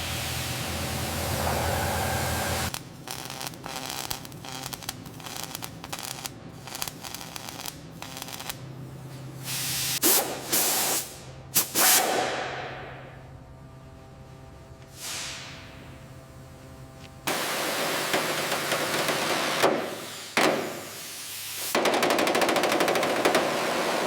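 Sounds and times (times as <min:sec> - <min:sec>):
spray hissing: 0:00.0 - 0:02.7.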